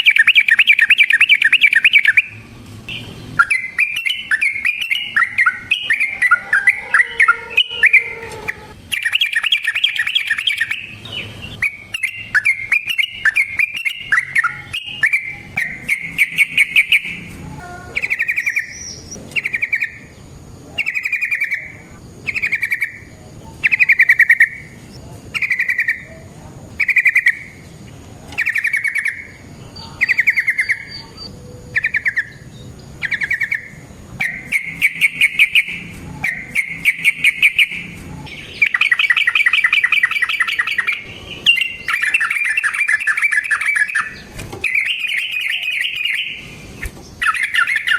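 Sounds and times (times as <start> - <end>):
bulbul chattering song: 0.0 - 47.9.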